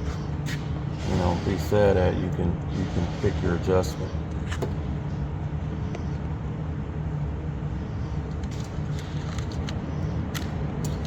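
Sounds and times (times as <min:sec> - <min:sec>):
workshop low rumble: 0:00.0 - 0:11.0.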